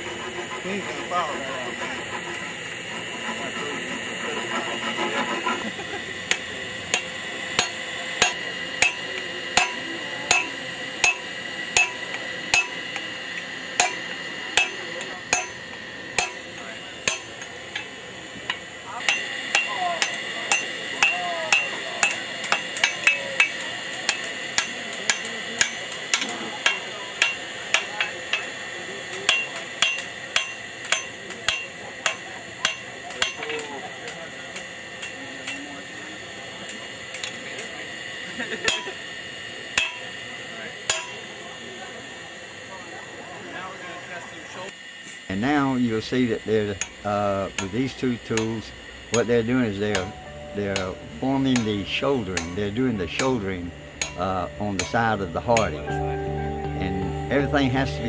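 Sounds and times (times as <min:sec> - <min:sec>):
sledgehammers striking steel on anvil: 0:06.2 - 0:13.2, 0:13.8 - 0:18.0, 0:19.0 - 0:28.5, 0:29.3 - 0:33.6, 0:39.8 - 0:40.1, 0:40.9 - 0:41.4, 0:46.5 - 0:56.0.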